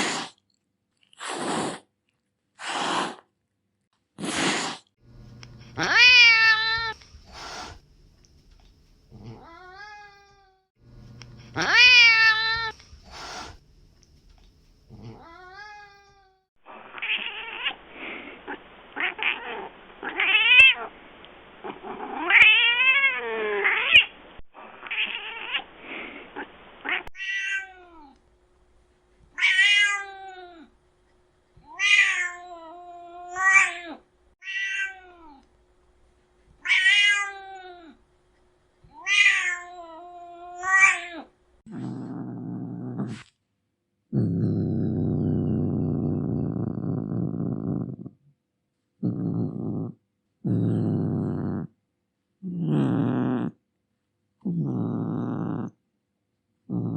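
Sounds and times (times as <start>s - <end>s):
cats meowing: 5.8s - 7.0s, 9.2s - 10.6s, 11.5s - 12.8s, 15.0s - 17.8s, 22.1s - 24.1s, 26.8s - 28.2s, 31.6s - 35.4s, 36.6s - 38.0s, 38.9s - 41.3s
hissy noise: 6.9s - 9.0s, 12.8s - 14.5s.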